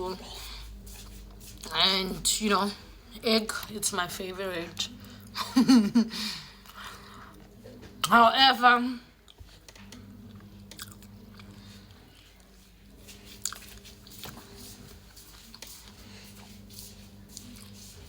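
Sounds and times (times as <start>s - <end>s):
faint steady hum: 0.0s - 18.0s
mouth chewing food: 9.2s - 18.0s.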